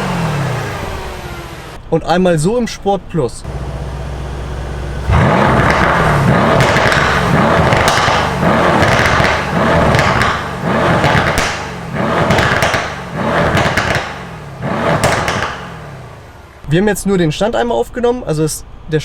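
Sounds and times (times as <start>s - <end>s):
car engine revving: 0.0s - 1.8s, 3.4s - 16.7s
exhaust pops and crackles: 3.5s - 16.4s.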